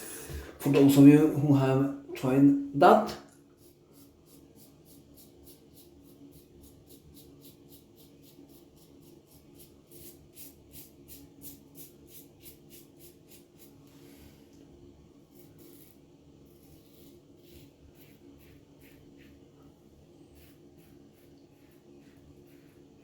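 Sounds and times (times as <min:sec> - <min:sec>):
razor scraping stubble: 0:03.5 - 0:13.8, 0:15.3 - 0:19.4, 0:20.2 - 0:23.0.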